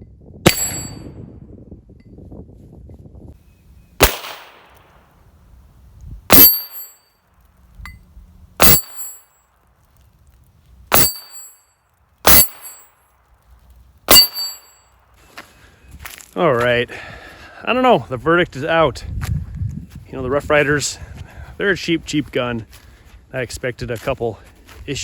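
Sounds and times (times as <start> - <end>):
revolver shots ringing: 0.5 - 1.1, 6.3 - 7.0, 12.3 - 12.8, 14.1 - 14.7.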